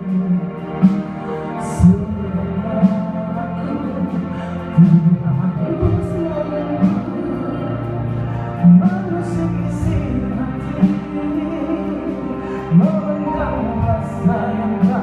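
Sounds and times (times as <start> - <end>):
orchestral music: 0.0 - 15.0.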